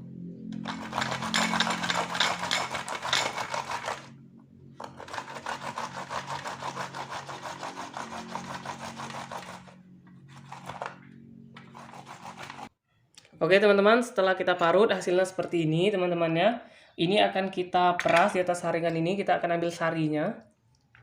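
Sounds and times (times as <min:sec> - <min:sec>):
ginger grated on hand grater: 0:00.6 - 0:04.1, 0:04.8 - 0:10.9, 0:11.6 - 0:12.7.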